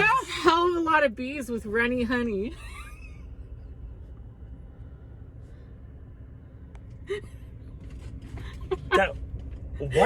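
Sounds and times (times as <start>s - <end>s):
diesel truck engine rumbling: 0.0s - 10.0s.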